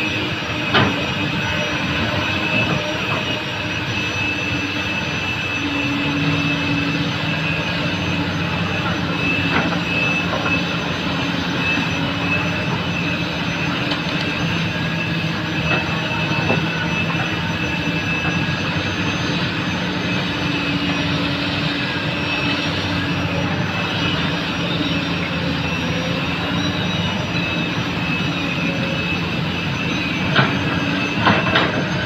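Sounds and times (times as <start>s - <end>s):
excavator diesel engine: 0.0s - 32.0s
high whine: 0.0s - 32.0s.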